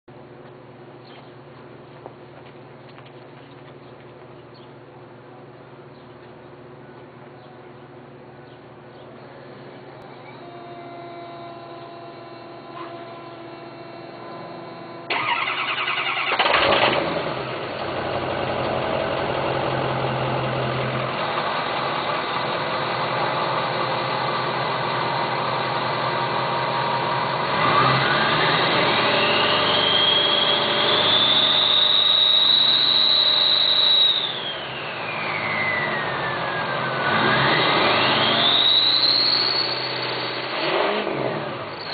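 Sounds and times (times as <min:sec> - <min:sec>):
diesel engine starting and idling: 0:09.5 - 0:41.9
turbocharger whistle: 0:10.2 - 0:17.6, 0:26.5 - 0:41.9
engine revving: 0:10.2 - 0:41.9.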